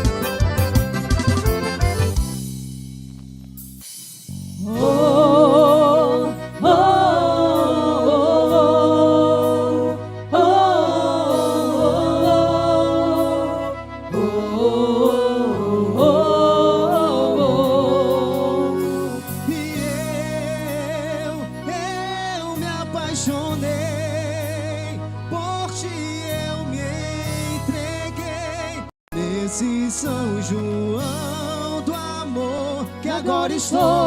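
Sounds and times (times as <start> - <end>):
low musical accompaniment: 0.0 - 34.0
person singing with vibrato: 4.6 - 22.3.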